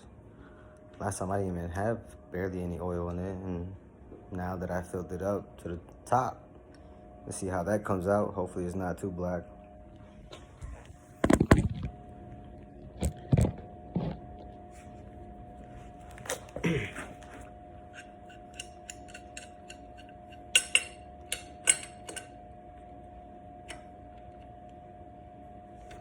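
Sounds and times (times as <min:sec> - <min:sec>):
faint steady hum: 0:00.0 - 0:26.0
metal tools clinking: 0:17.9 - 0:22.4.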